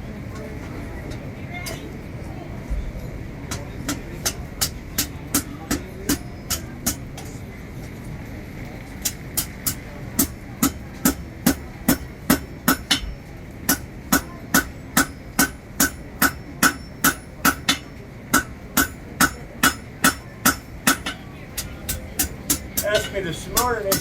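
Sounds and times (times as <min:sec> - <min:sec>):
hammer ringing on anvil: 0:03.5 - 0:07.4, 0:09.1 - 0:24.0.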